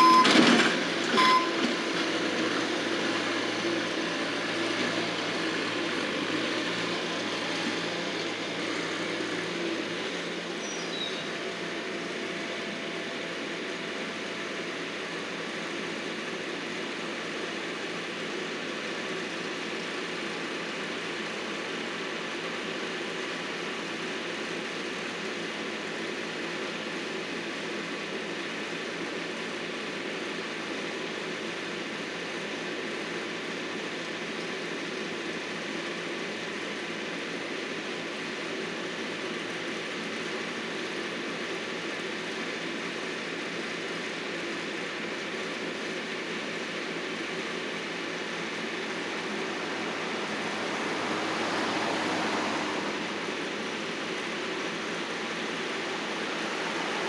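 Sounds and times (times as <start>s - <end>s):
landscaping machinery drone: 0.0s - 20.4s, 36.0s - 57.0s.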